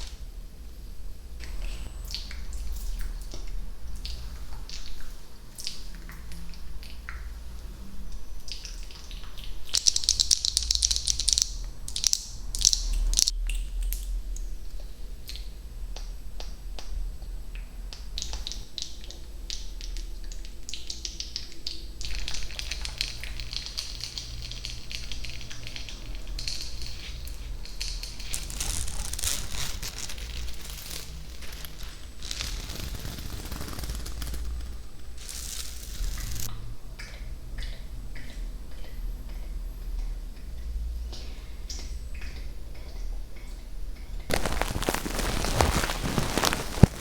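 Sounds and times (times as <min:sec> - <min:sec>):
crisp clicks and crackles: 0:09.7 - 0:14.0, 0:22.0 - 0:36.5, 0:44.3 - 0:47.0.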